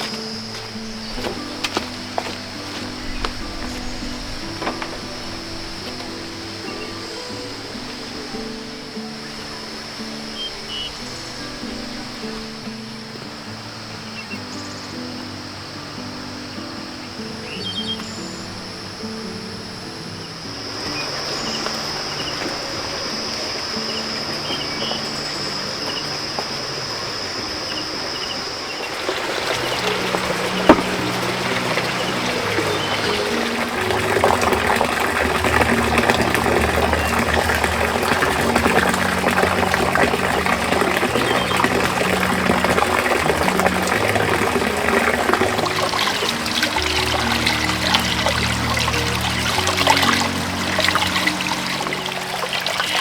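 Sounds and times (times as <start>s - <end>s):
soft background music: 0.0s - 53.0s
water trickling: 0.0s - 53.0s.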